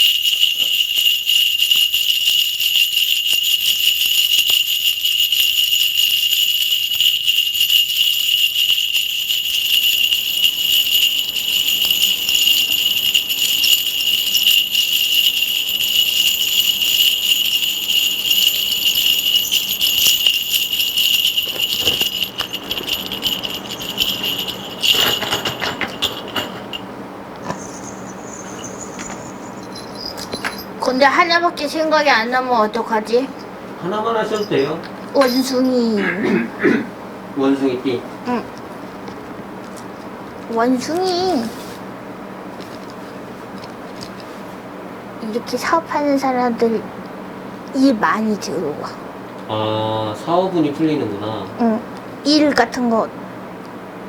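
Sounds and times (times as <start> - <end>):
small metal bells jingling: 0.0 - 33.4, 34.0 - 36.0, 40.5 - 41.7, 45.2 - 46.8.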